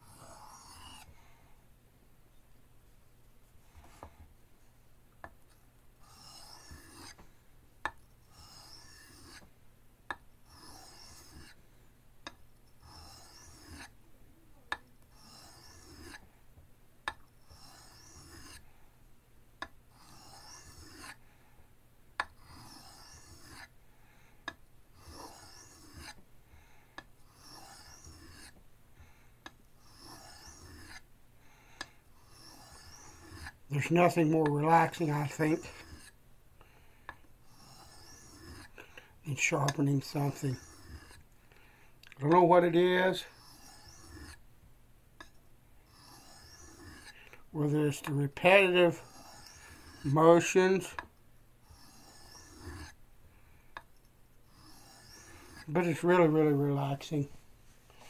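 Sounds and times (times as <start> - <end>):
knife rasping on sharpening stone: 0.1 - 1.0, 6.0 - 7.2, 8.3 - 9.4, 10.5 - 11.6, 12.8 - 13.9, 15.2 - 16.2, 17.5 - 18.6, 20.0 - 21.2, 22.4 - 23.7, 25.0 - 26.2, 27.3 - 28.6, 29.8 - 31.0, 32.2 - 36.2, 37.4 - 41.2, 42.3 - 44.4, 45.9 - 47.2, 47.8 - 51.0, 51.6 - 53.0, 54.5 - 56.4.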